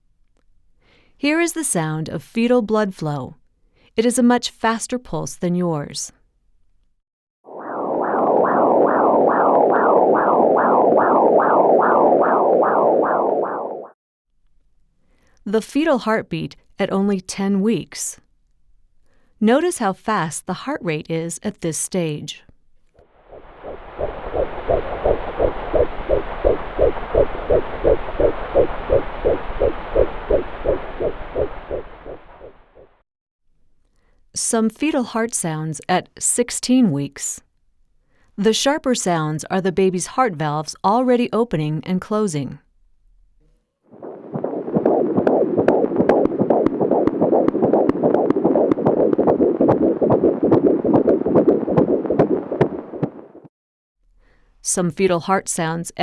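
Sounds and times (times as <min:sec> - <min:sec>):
fetal heartbeat pulse: 0:08.5 - 0:13.9, 0:23.3 - 0:33.0, 0:44.0 - 0:53.5.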